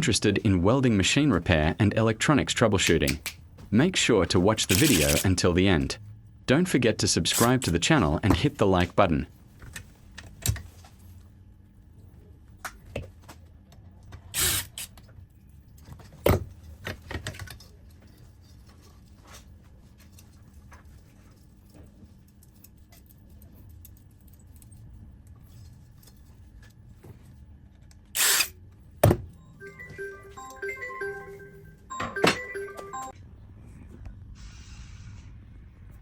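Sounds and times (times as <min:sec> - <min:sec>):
tinkling melody: 0:29.5 - 0:33.2.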